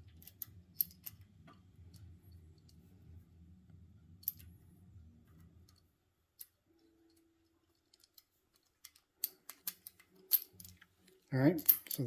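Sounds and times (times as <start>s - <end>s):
low hum: 0.0s - 7.3s
metallic clicks and taps: 6.4s - 12.0s.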